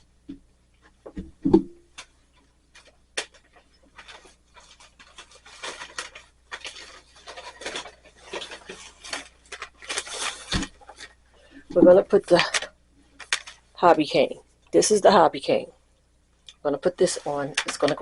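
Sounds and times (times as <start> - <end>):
rustling and scraping materials: 1.9 - 13.8, 17.0 - 18.0.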